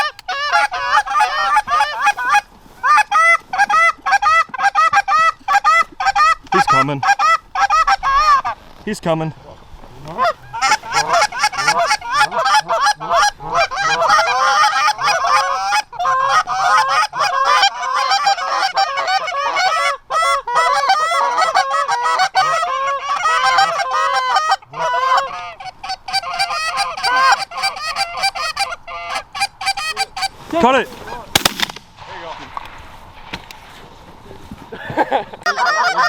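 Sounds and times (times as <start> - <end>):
geese honking and clucking: 0.0 - 8.7, 10.0 - 31.7, 35.4 - 36.0.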